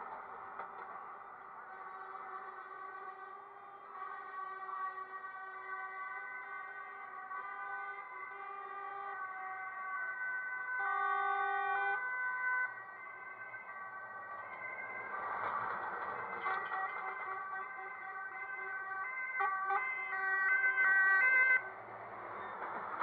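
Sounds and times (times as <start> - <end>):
truck horns sounding: 1.7 - 9.6, 10.8 - 12.1, 16.4 - 21.6.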